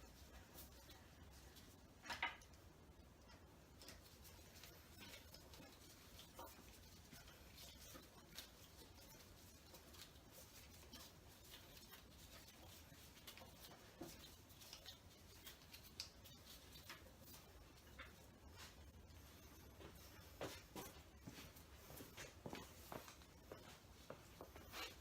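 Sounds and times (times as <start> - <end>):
faint light clicks and ticks: 0.3 - 19.4.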